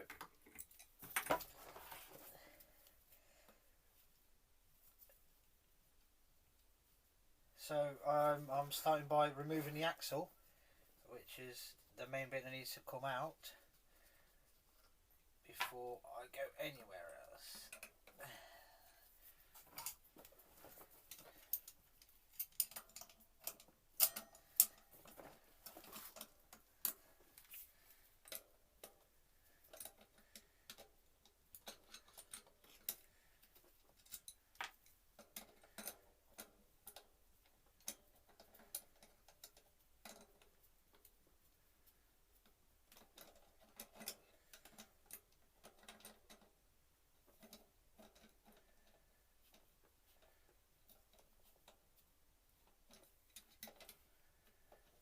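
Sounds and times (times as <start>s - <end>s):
metallic clicks of hand tools: 21.5s - 24.8s.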